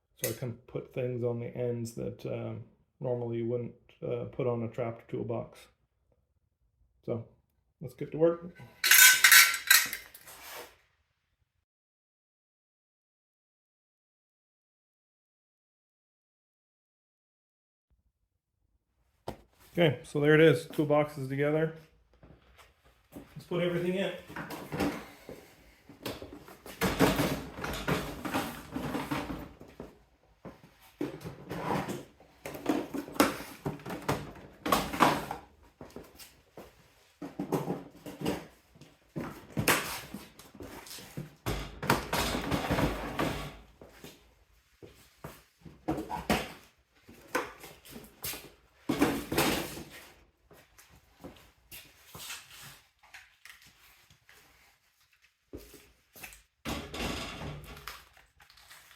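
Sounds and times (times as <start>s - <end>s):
tools clattering on metal shelves: 8.7s - 10.4s, 26.1s - 29.7s, 41.4s - 43.6s, 56.7s - 57.9s.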